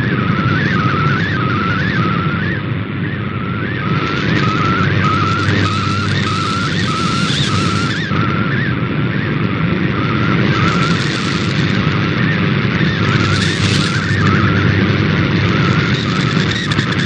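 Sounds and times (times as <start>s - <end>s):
wavering radio tone: 0.8s - 17.0s
radio static: 3.4s - 8.6s, 9.4s - 17.0s.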